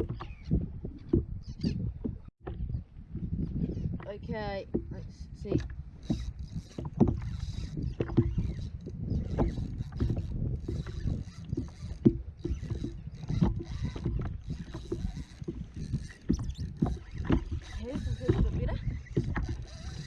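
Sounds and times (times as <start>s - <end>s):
low rumble of water: 0.0s - 20.0s
wind: 0.0s - 20.0s
gear knocking and clicking: 5.5s - 20.0s.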